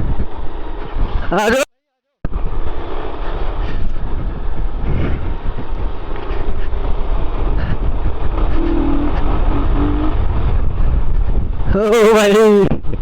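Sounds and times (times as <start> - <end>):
wind rushing over microphone: 0.0 - 1.3, 2.3 - 13.0
motorcycle engine running: 7.0 - 10.4
short steady tone: 8.6 - 10.2.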